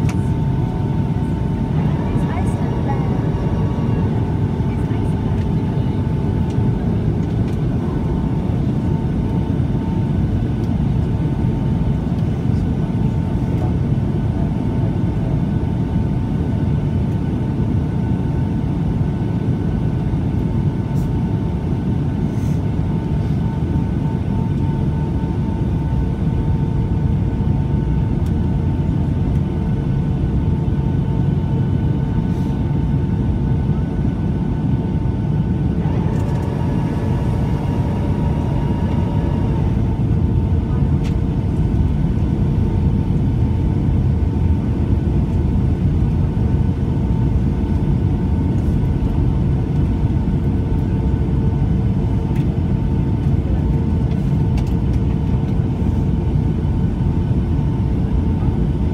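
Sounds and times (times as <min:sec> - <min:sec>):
faint steady whine: 0:00.0 - 0:11.1, 0:31.8 - 0:46.4
engine and airflow roar: 0:00.0 - 0:58.9.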